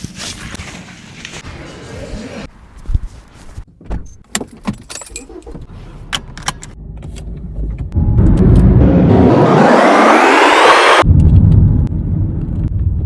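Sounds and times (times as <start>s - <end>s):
engine revving up: 8.0s - 11.1s.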